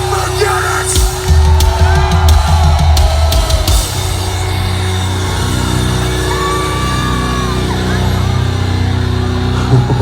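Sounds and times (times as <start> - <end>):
heavy metal band playing live: 0.0 - 10.0
pounding kick drums: 0.9 - 4.6.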